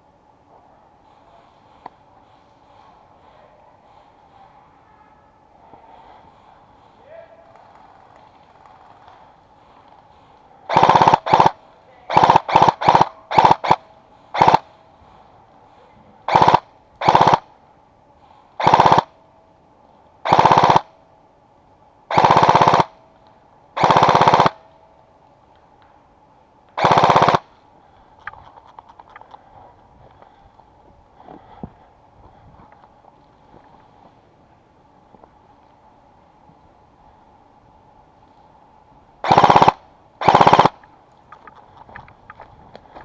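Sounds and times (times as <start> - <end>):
airsoft gun full-auto bursts: 10.7 - 14.7, 16.3 - 17.5, 18.6 - 19.2, 20.2 - 20.9, 22.1 - 23.0, 23.8 - 24.7, 26.8 - 27.6, 39.2 - 40.9.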